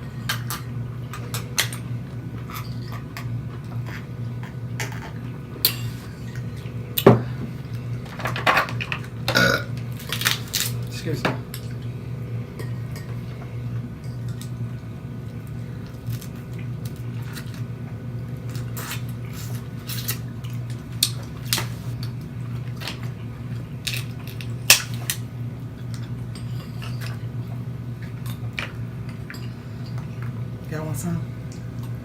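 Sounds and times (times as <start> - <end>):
low hum: 0.0 - 32.0
crab shells cracking: 9.8 - 10.9, 23.8 - 25.2.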